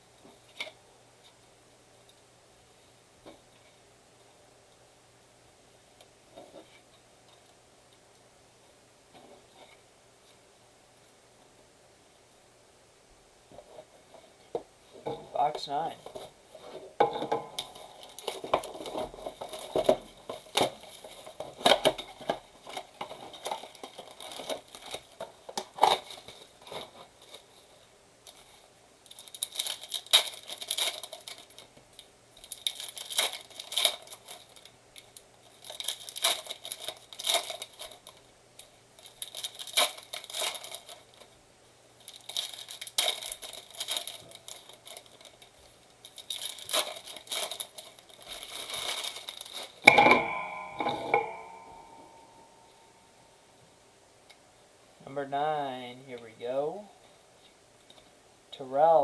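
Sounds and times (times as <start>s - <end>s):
plastic wrap crinkling and tearing: 17.6s - 41.4s, 42.0s - 49.9s.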